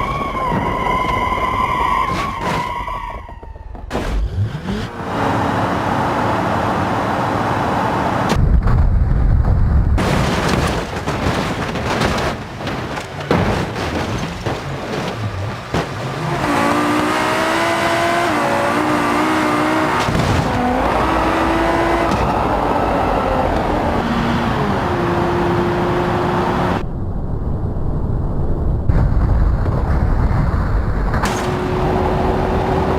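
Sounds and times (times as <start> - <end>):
tyre and road noise: 0.0 - 26.9, 28.9 - 32.9
car engine revving: 14.7 - 26.8.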